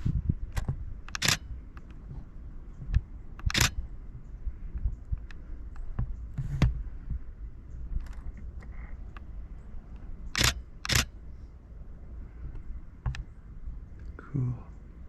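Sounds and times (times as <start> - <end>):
steady low rumble: 0.0 - 15.0
camera shutter clicks: 1.1 - 1.5, 3.4 - 3.8, 10.3 - 11.1.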